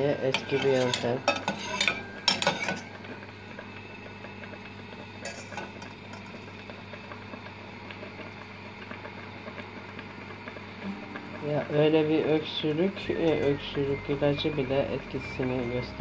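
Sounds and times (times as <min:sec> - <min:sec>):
faint crackle of bubbling: 0:02.9 - 0:13.0.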